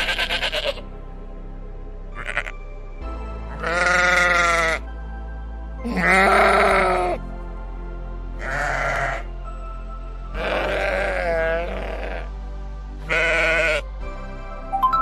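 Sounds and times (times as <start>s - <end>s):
sheep bleating: 0.0s - 0.8s, 2.2s - 2.6s, 3.5s - 4.8s, 5.8s - 7.2s, 8.4s - 9.3s, 10.3s - 12.3s, 13.0s - 13.8s
background music: 0.0s - 15.0s.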